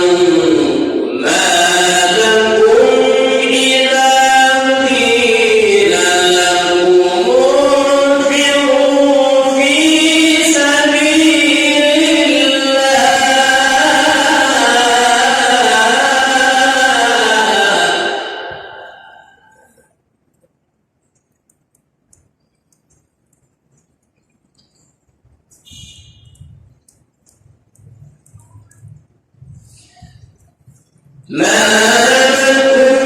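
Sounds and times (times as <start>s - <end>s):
man reciting melodically: 0.0s - 19.8s, 27.8s - 33.0s.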